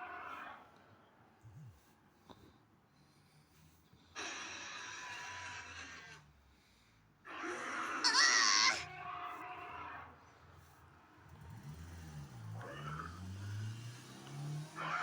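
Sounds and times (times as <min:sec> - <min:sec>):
wavering high-pitched creature cry: 0:07.4 - 0:08.9.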